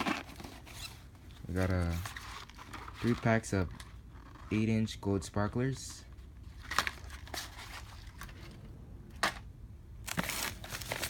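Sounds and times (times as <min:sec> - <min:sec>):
packaging rustling: 0:00.0 - 0:04.5, 0:10.0 - 0:11.0.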